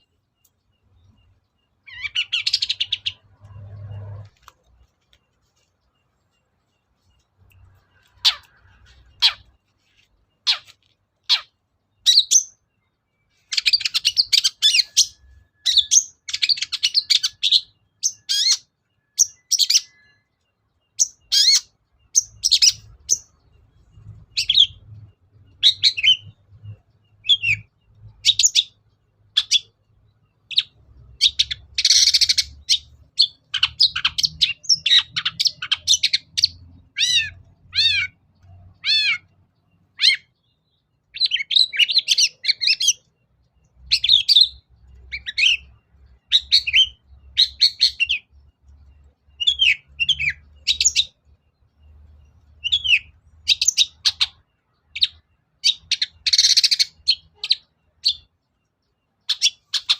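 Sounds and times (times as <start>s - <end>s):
bird singing varied chattering notes: 0.0s - 59.9s.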